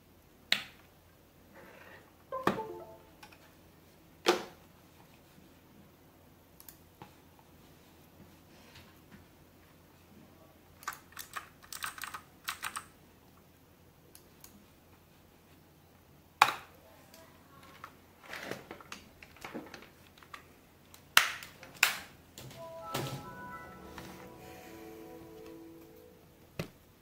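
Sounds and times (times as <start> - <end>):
mechanical keyboard typing: 10.8 - 12.9.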